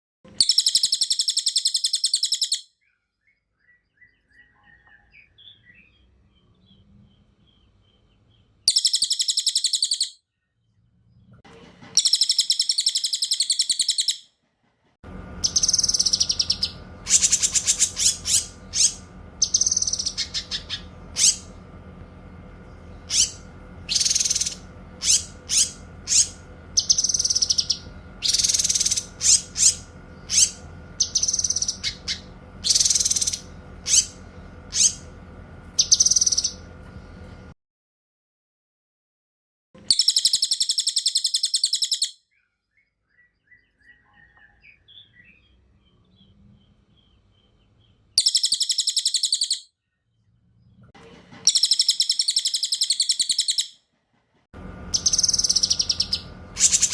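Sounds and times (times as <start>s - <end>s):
high bird trills: 0.3s - 6.0s, 8.6s - 10.2s, 12.0s - 14.4s, 15.4s - 21.7s, 22.6s - 36.7s, 39.8s - 46.4s, 47.0s - 49.7s, 51.4s - 53.8s, 54.9s - 56.9s
songbirds singing: 0.3s - 11.4s, 12.0s - 14.3s, 15.2s - 37.5s, 39.8s - 53.8s, 54.6s - 56.9s
low steady hum: 15.0s - 37.6s, 54.6s - 56.9s.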